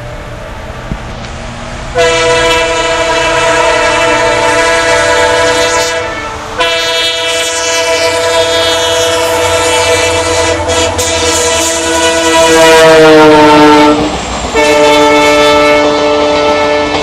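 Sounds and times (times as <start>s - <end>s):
diesel locomotive horn blasts: 1.9s - 17.0s.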